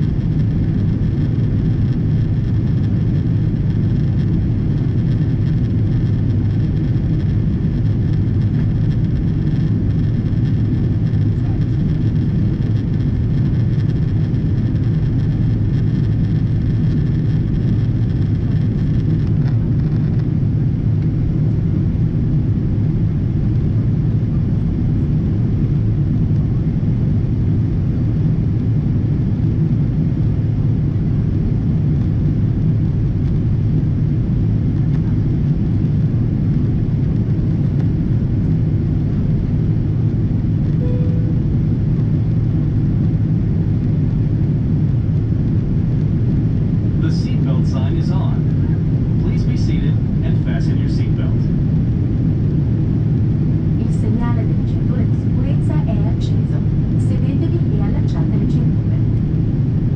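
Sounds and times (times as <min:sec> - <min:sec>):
jet engines rumbling: 0:00.0 - 0:59.9
faint high whine: 0:40.5 - 0:44.9, 0:45.6 - 0:59.9.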